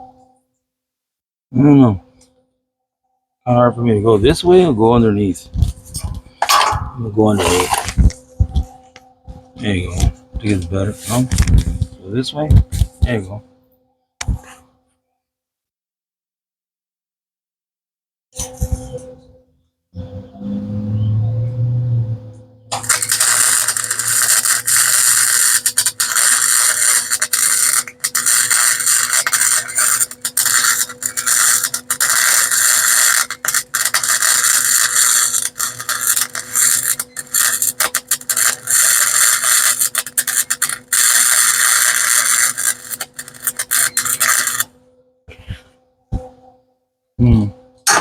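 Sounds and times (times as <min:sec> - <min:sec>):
welding arc crackling: 0:22.7 - 0:44.8.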